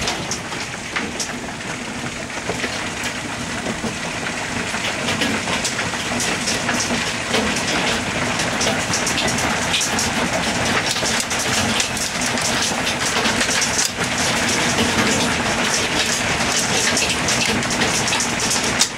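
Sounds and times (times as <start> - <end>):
hail and rain clattering: 0.0 - 18.9.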